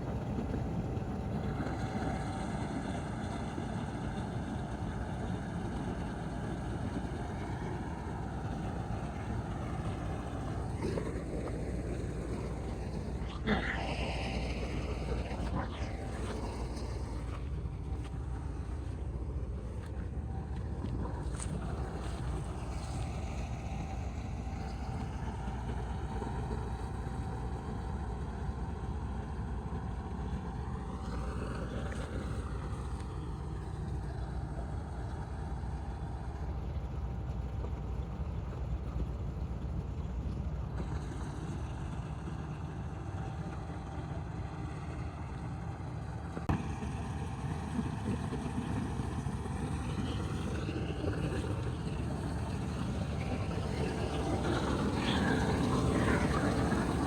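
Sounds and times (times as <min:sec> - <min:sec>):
diesel farm machine engine: 0:00.0 - 0:57.0.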